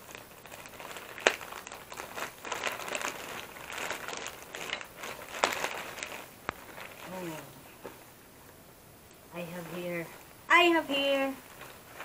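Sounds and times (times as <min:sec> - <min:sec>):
packaging crinkling and rustling: 0:00.0 - 0:08.1, 0:10.9 - 0:12.0.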